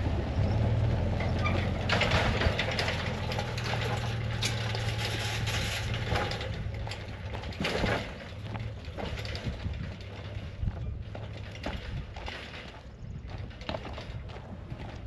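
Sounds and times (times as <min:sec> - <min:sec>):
vehicle engine humming: 0:00.0 - 0:15.0
load rattling and crunching: 0:01.0 - 0:15.0.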